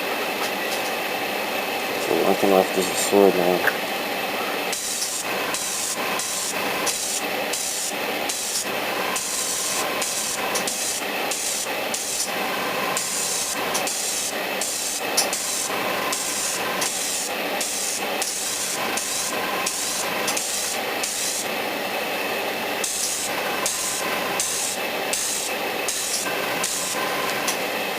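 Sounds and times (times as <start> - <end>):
airbrush spraying hiss: 4.7 - 21.5, 22.8 - 27.6.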